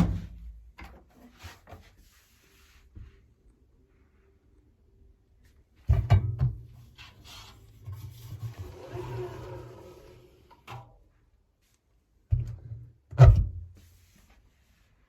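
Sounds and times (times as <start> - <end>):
rough scraping noise: 7.2 - 10.6.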